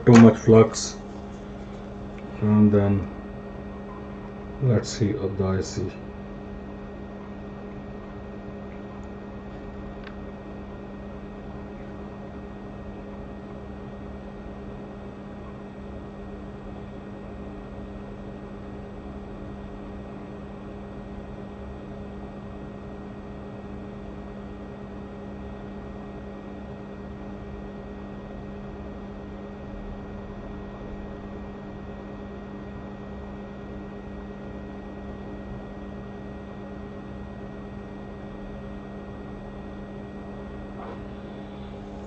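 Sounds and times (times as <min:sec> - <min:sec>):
hot air station whirring: 0:00.0 - 0:21.3, 0:31.4 - 0:42.0.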